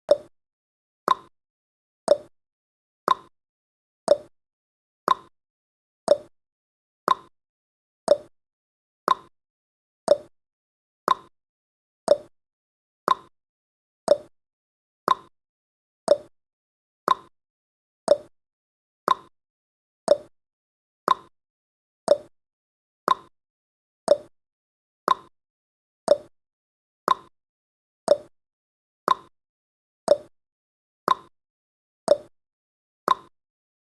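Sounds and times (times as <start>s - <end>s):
timer ticking: 0.1s - 0.3s, 1.1s - 1.3s, 2.1s - 2.3s, 3.1s - 3.3s, 4.1s - 4.3s, 5.1s - 5.3s, 6.1s - 6.3s, 7.1s - 7.3s, 8.1s - 8.3s, 9.1s - 9.3s, 10.1s - 10.3s, 11.1s - 11.3s, 12.1s - 12.3s, 13.1s - 13.3s, 14.1s - 14.3s, 15.1s - 15.3s, 16.1s - 16.3s, 17.1s - 17.3s, 18.1s - 18.3s, 19.1s - 19.3s, 20.1s - 20.3s, 21.1s - 21.3s, 22.1s - 22.3s, 23.1s - 23.3s, 24.1s - 24.3s, 25.1s - 25.3s, 26.1s - 26.3s, 27.1s - 27.3s, 28.1s - 28.3s, 29.1s - 29.3s, 30.1s - 30.3s, 31.1s - 31.3s, 32.1s - 32.3s, 33.1s - 33.3s.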